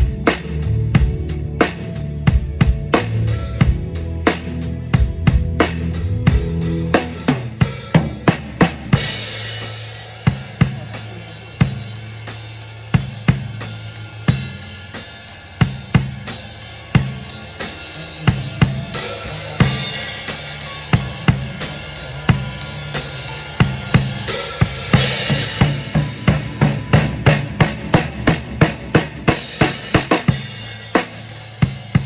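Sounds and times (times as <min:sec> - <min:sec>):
low notes ringing: 0:00.0 - 0:31.6
drum kit playing: 0:00.0 - 0:32.0
cymbal crash: 0:08.8 - 0:12.9.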